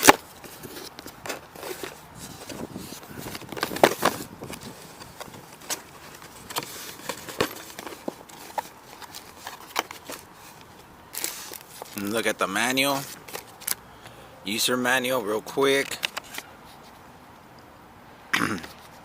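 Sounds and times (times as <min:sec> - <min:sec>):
cardboard box contents handled: 0:00.0 - 0:12.1.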